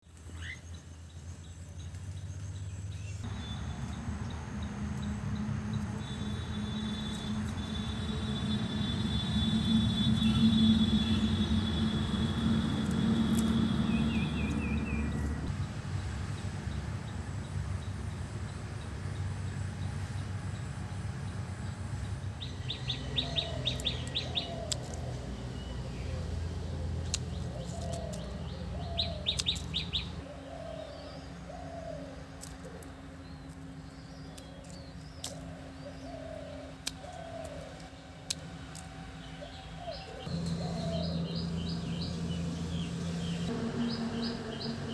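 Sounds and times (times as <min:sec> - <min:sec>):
low background rumble: 0:33.2 - 0:44.9
bird trilled chirps: 0:39.9 - 0:44.9.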